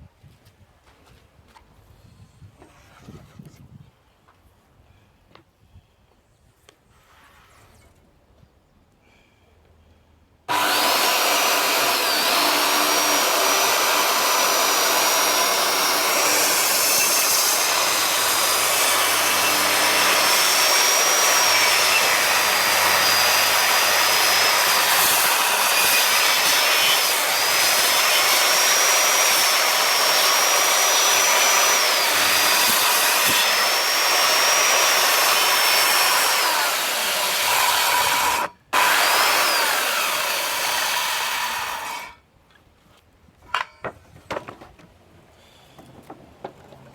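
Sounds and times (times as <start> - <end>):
circular saw cutting wood: 10.5 - 42.2.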